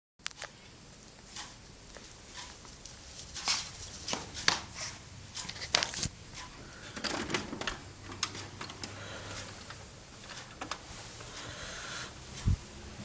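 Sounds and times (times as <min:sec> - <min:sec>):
sharp clicks and light knocks: 0:05.4 - 0:11.4.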